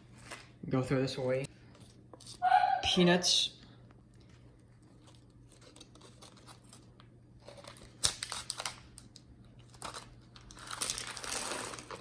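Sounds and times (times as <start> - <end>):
plastic packet crinkling: 4.9 - 12.0.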